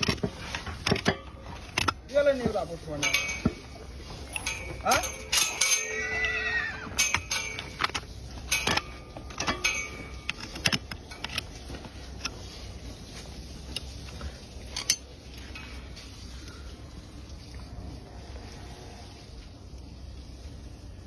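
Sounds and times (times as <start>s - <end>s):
metal tools knocking on hoof: 2.3s - 11.8s
high rising-falling call: 5.6s - 7.0s.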